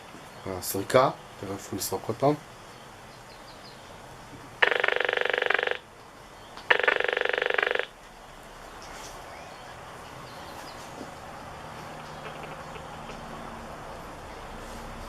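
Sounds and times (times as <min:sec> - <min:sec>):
harsh buzzing bursts: 0:04.6 - 0:05.9, 0:06.7 - 0:08.0, 0:11.9 - 0:14.1.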